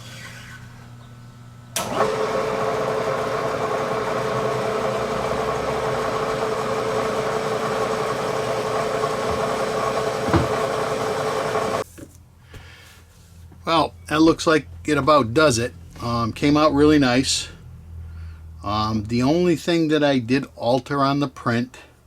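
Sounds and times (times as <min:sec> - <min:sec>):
milling machine motor humming: 0:01.7 - 0:11.8
motor switch click: 0:01.8 - 0:02.2.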